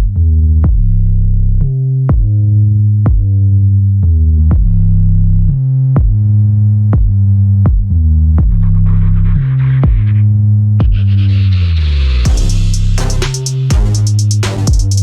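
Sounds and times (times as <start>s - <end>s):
heavy synth bass: 0.0s - 15.0s
drum machine beat: 6.0s - 6.2s, 7.0s - 8.7s, 10.8s - 11.1s, 12.3s - 15.0s.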